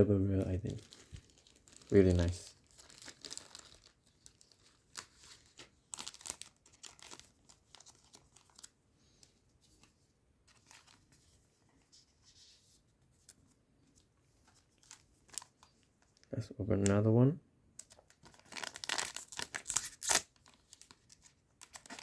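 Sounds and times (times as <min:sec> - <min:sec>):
foil wrappers crinkling and tearing: 0:00.5 - 0:08.7, 0:17.8 - 0:22.0.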